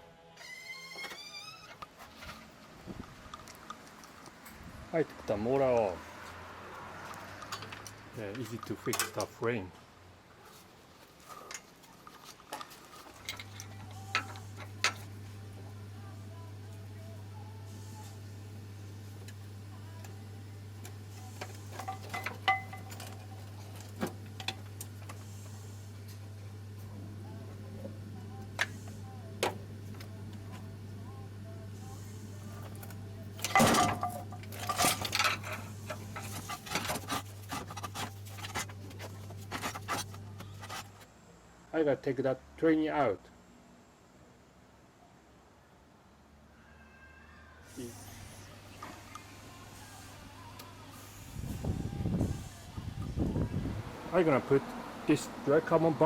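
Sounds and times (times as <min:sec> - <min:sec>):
metal tools clinking: 0:11.3 - 0:15.1, 0:21.7 - 0:23.3, 0:33.4 - 0:40.8.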